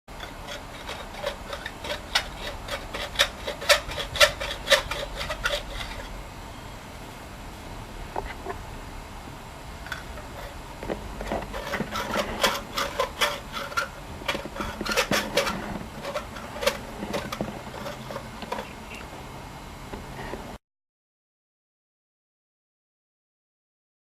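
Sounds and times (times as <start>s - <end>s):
hand reamer scraping metal tubing: 0.1s - 6.2s, 9.9s - 19.1s
low steady hum: 0.1s - 20.6s.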